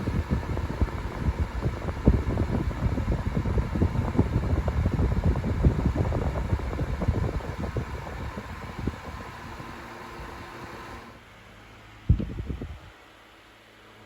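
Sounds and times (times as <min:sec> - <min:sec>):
wind buffeting microphone: 0:00.0 - 0:10.4
electric fan running: 0:00.0 - 0:14.0.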